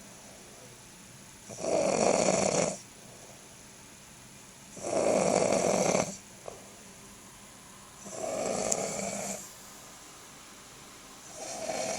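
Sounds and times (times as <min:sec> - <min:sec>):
man snoring: 0:01.5 - 0:02.8, 0:04.8 - 0:06.2, 0:08.0 - 0:09.4, 0:11.3 - 0:11.9.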